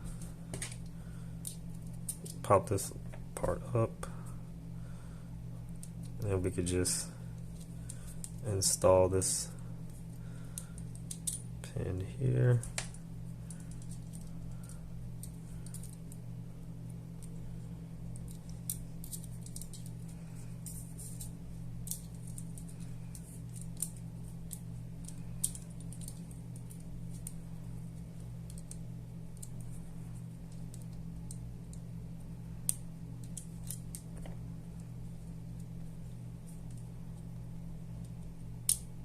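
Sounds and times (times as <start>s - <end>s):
steady low hum: 0.0s - 39.0s
clicks of small parts handled: 18.2s - 20.0s.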